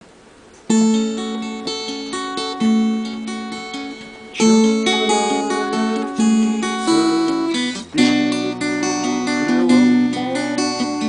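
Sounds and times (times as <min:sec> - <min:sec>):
acoustic guitar: 0:00.5 - 0:11.0
resonator slide guitar: 0:00.7 - 0:11.0.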